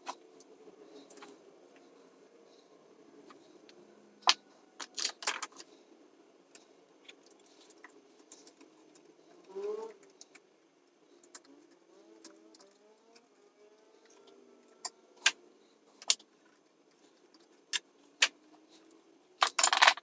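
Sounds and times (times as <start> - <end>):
hand tools clicking on wires: 19.4 - 20.0.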